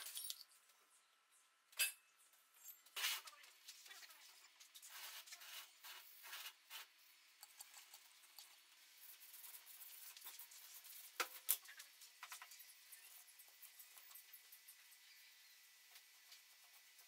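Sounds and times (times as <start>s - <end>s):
faint scraping and rubbing: 2.8s - 11.2s.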